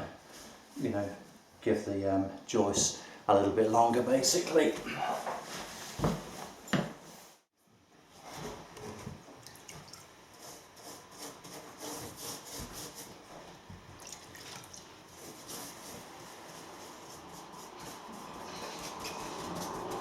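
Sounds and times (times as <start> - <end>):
brush scraping on wood: 10.3 - 13.7, 15.0 - 20.0.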